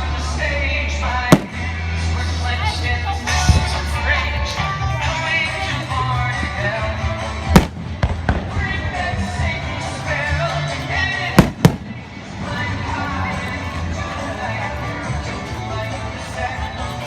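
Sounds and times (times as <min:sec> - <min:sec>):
music with singing: 0:00.0 - 0:17.0
fireworks bangs: 0:01.3 - 0:01.8, 0:07.6 - 0:08.8, 0:11.4 - 0:12.1.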